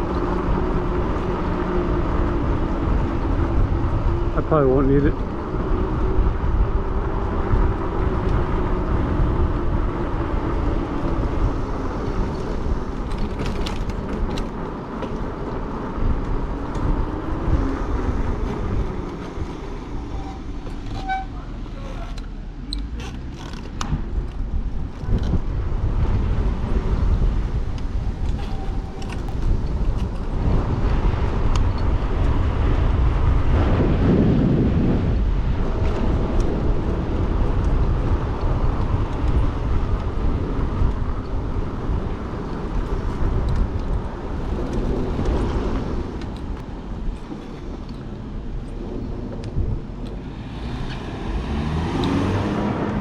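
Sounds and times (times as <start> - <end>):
wind rushing over microphone: 0.0 - 21.7, 23.6 - 53.0
tire rumble on road: 0.0 - 53.0.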